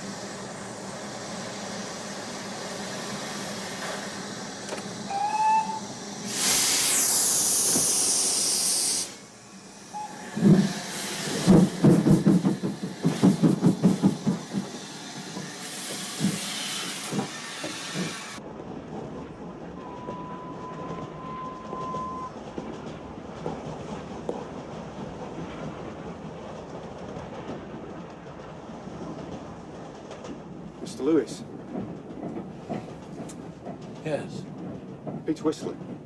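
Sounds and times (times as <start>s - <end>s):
loud hiss of steam: 0.0s - 18.4s
steam train whistle: 5.1s - 9.2s, 9.9s - 10.4s, 19.8s - 22.3s.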